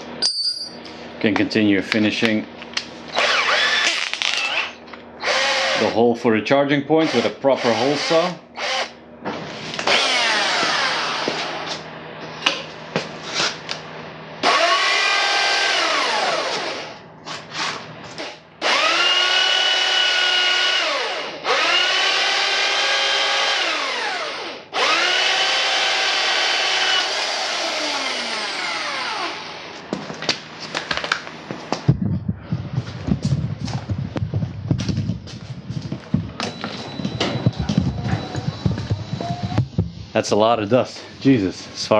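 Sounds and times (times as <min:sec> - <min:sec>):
power drill whine: 0:03.1 - 0:05.9, 0:07.0 - 0:08.9, 0:09.7 - 0:11.6, 0:14.4 - 0:17.0, 0:18.1 - 0:29.7, 0:36.4 - 0:39.8.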